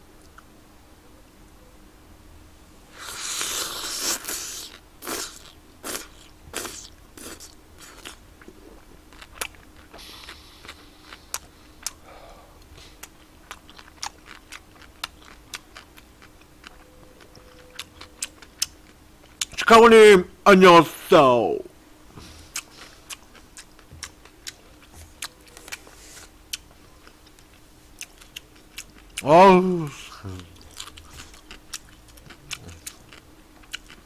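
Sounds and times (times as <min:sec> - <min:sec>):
wet bite or slurp: 0:03.0 - 0:08.1
chewing with mouth clicks: 0:03.0 - 0:12.0, 0:12.6 - 0:19.6, 0:22.2 - 0:29.2, 0:30.4 - 0:34.0.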